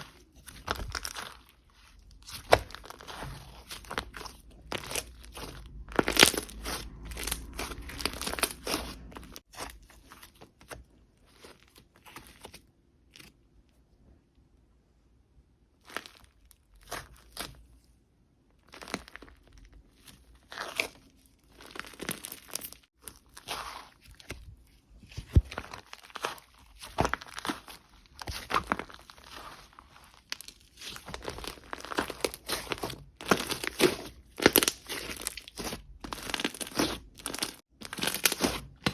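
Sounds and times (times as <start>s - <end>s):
slime crackling and popping: 0.0s - 9.5s, 18.6s - 38.9s.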